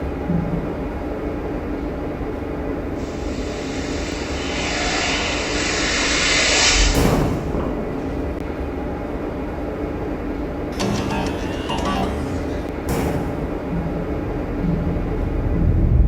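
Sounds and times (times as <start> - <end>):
spaceship rumble with hiss: 3.0 - 8.4.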